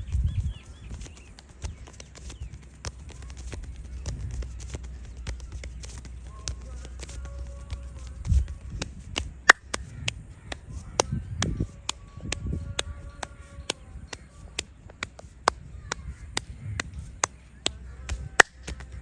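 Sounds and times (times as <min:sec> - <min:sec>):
hands slapping head: 0:08.2 - 0:12.4.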